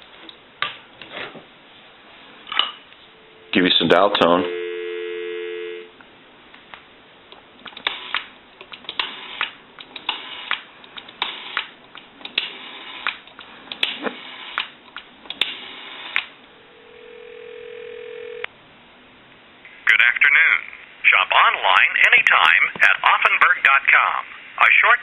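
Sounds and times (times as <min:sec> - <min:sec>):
telephone ringback tone: 0:03.2 - 0:06.0, 0:16.7 - 0:18.5.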